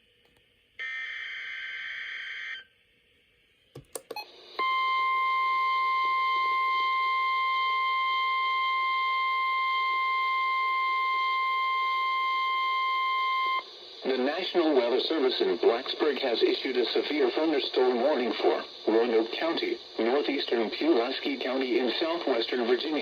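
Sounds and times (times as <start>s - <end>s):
clicks: 3.8s - 4.2s.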